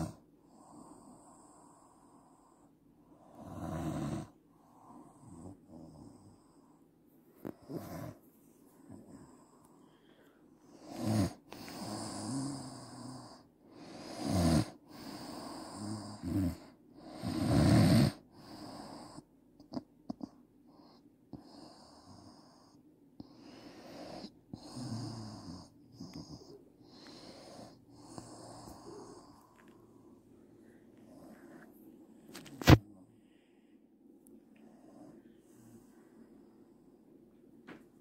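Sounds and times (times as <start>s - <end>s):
woman snoring: 0.0s - 1.8s, 3.2s - 4.4s, 7.5s - 8.2s, 10.7s - 19.2s, 23.3s - 29.7s
soft breathing: 4.2s - 12.2s, 20.2s - 37.4s.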